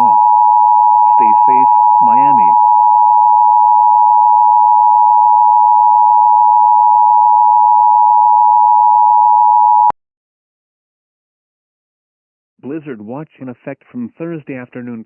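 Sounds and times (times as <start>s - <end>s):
loud two-tone alert beep: 0.0s - 0.3s, 1.0s - 2.7s.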